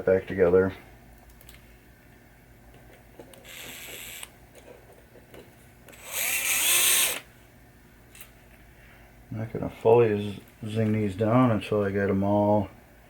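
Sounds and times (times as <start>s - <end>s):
power driver driving screws: 3.4s - 4.3s, 5.9s - 7.3s.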